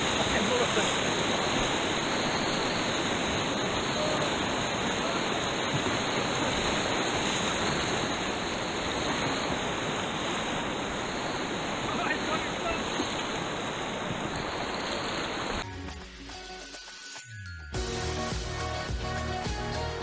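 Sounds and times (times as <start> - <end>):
white water rushing through rapids: 0.0 - 15.6.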